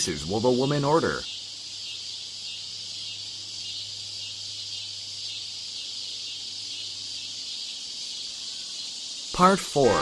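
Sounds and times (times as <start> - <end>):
high-pitched hiss: 0.0 - 10.0.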